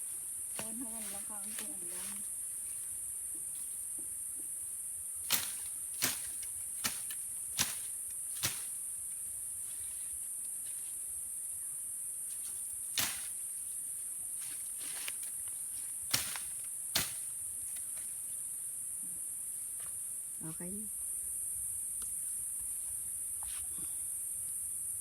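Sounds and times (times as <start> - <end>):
insects droning: 0.0 - 25.0
knife chopping vegetation: 5.2 - 8.8, 12.9 - 13.4, 16.1 - 18.0.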